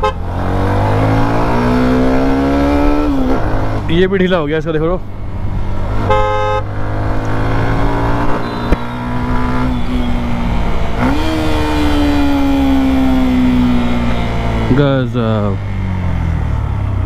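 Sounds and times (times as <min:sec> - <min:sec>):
engine revving: 0:00.0 - 0:04.0, 0:05.7 - 0:17.0.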